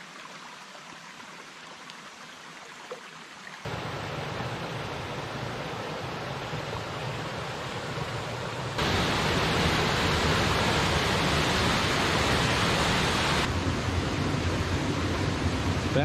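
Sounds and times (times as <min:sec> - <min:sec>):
heavy rain falling: 0:03.7 - 0:16.0.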